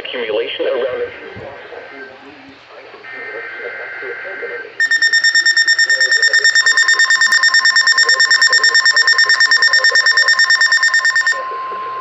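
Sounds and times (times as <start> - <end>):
steady warning alarm tone: 4.0 - 12.0
rapid alert beeping: 4.8 - 11.8.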